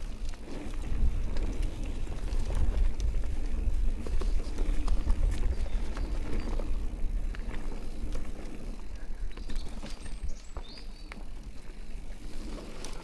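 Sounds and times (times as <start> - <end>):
bike rattling clicks and knocks: 0.0 - 13.0
tyres rumbling on dirt: 0.0 - 13.0.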